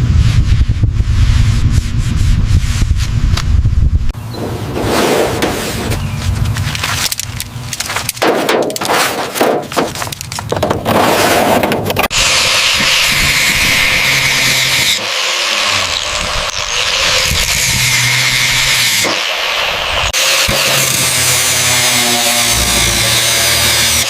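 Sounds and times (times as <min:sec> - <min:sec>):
scraping on car body: 0:04.4 - 0:07.0, 0:07.9 - 0:12.1
power tool hissing: 0:12.1 - 0:21.3.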